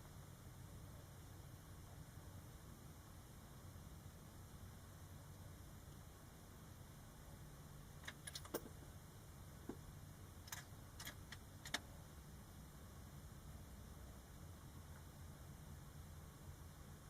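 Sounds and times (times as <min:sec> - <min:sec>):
low steady hum: 0:00.0 - 0:17.0
small clicks and clinks: 0:08.0 - 0:08.8, 0:10.4 - 0:11.9.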